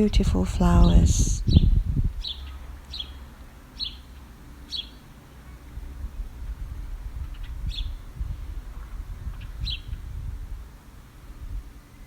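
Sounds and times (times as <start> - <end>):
faint low rumble: 0.0 - 2.3
small bird chirping: 1.4 - 5.0, 7.3 - 8.0, 9.4 - 10.0.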